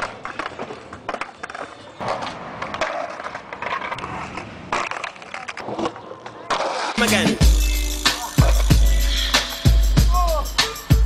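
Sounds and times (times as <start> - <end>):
skateboard wheels rumbling on pavement: 0.0 - 7.1
skateboard clacking: 0.0 - 7.3, 8.1 - 8.9.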